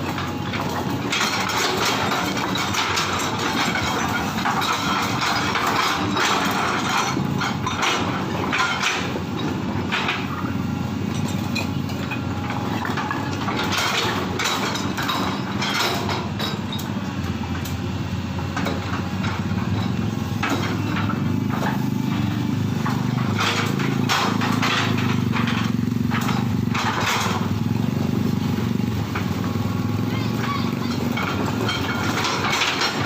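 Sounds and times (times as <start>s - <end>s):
diesel engine running under load: 0.0s - 33.0s
metallic clanks and scraping: 0.0s - 33.0s.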